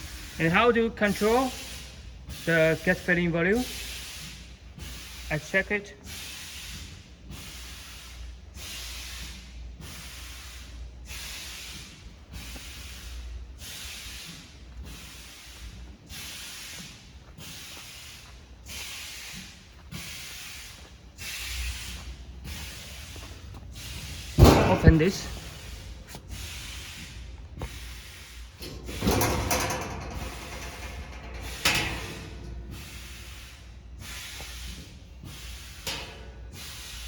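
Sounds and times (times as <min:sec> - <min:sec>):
hiss of air and gas: 0:00.0 - 0:37.0
low machine hum: 0:20.7 - 0:37.0.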